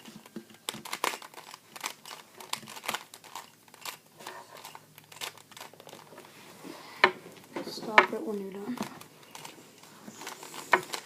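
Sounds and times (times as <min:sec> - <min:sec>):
puzzle cube clicking and rattling: 0:00.0 - 0:06.1, 0:08.8 - 0:11.0.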